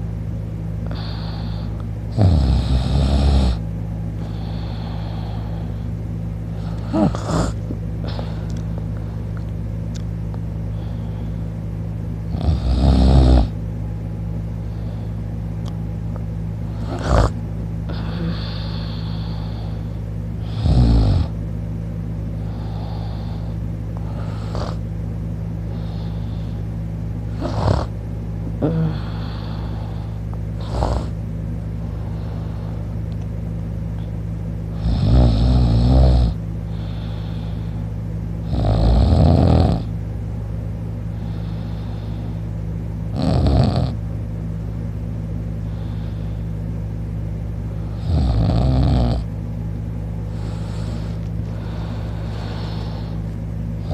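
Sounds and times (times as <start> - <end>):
steady low hum: 0.0 - 53.9
faint breaths: 0.8 - 2.1, 3.5 - 9.5, 10.6 - 11.8, 14.4 - 15.6, 16.5 - 21.4, 22.0 - 24.9, 25.5 - 34.8, 36.4 - 38.2, 40.9 - 42.8, 45.5 - 48.1, 50.0 - 53.9
person snoring: 0.8 - 3.6, 6.5 - 8.6, 12.3 - 13.6, 16.7 - 21.4, 22.4 - 24.8, 27.3 - 27.9, 28.6 - 31.2, 34.7 - 37.8, 38.4 - 39.9, 43.1 - 44.0, 47.8 - 49.3, 50.3 - 53.2.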